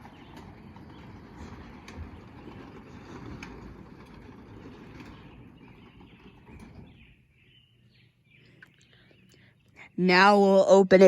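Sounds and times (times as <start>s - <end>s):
garage door opener running: 0.0s - 8.1s.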